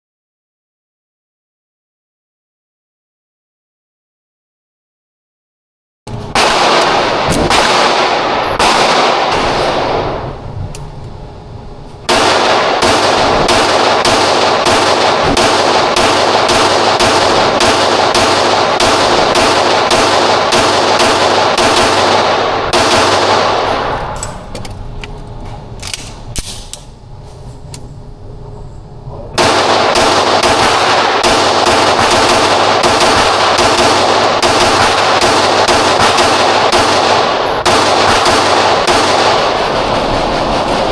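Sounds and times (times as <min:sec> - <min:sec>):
rapid pistol fire: 0:06.3 - 0:10.4, 0:12.0 - 0:24.2, 0:29.4 - 0:40.9.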